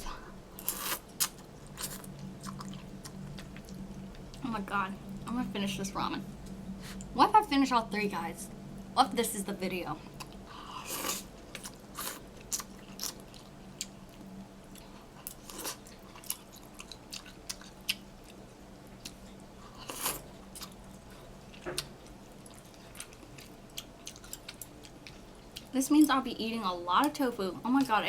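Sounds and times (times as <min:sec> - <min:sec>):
person chewing noodles: 0:00.0 - 0:04.2, 0:10.1 - 0:18.4, 0:19.0 - 0:25.7
faint steady hum: 0:00.0 - 0:28.0.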